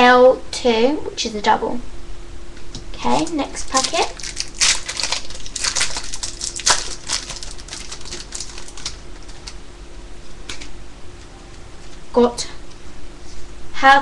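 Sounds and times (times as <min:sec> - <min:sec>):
card packet tearing and crinkling: 0:03.0 - 0:09.6.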